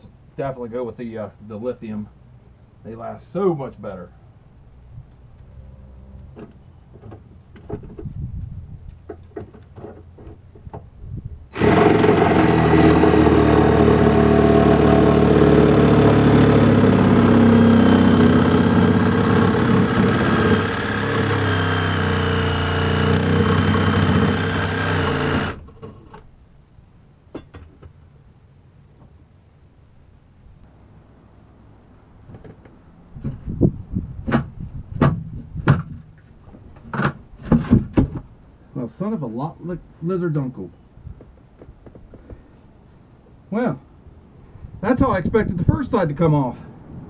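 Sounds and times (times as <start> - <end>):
cordless power tool running: 11.5 - 25.6.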